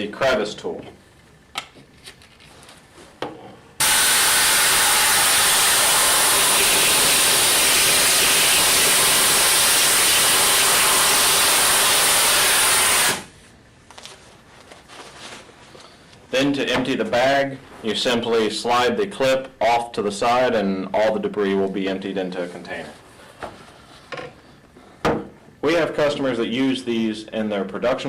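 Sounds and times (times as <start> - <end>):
compressed-air vacuum rushing: 3.8 - 13.3.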